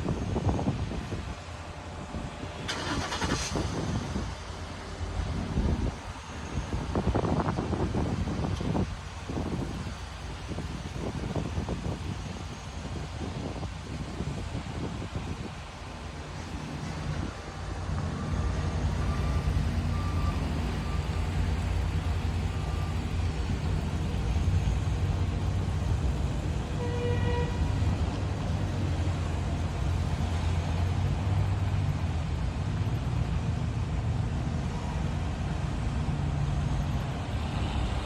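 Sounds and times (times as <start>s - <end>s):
vehicle engine and road rumble: 0.0s - 38.0s
horn toot: 26.7s - 28.0s.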